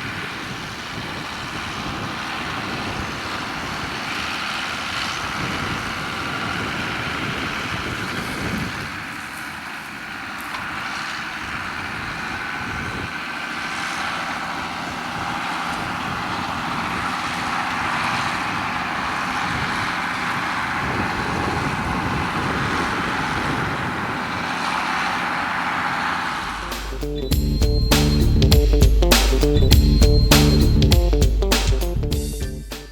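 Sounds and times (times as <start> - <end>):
tractor engine running: 0.0 - 32.9.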